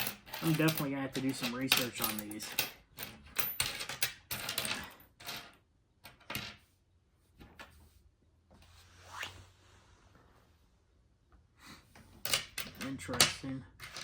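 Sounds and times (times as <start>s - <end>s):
coins clinking on table: 0.0s - 6.6s, 12.2s - 14.0s
soft rustle: 6.6s - 11.0s.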